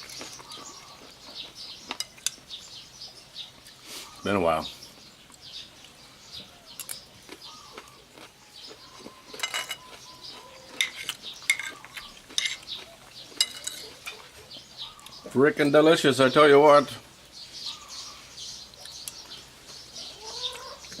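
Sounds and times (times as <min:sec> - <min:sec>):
cutlery clinking on a dish: 0:09.3 - 0:10.0, 0:10.7 - 0:12.7, 0:13.3 - 0:14.2.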